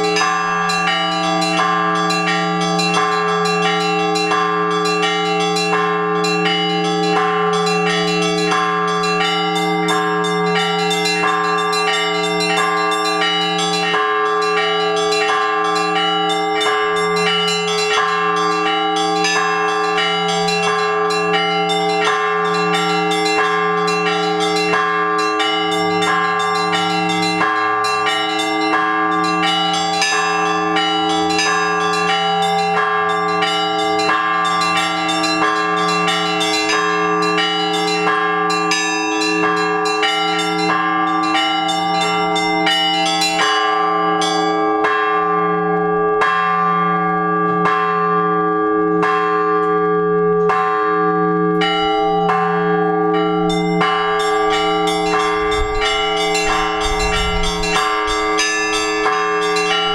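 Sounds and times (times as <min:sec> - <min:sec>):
small bells struck rapidly: 0:00.0 - 0:45.2, 0:51.6 - 0:59.9
deep large bell strokes: 0:53.1 - 0:59.9.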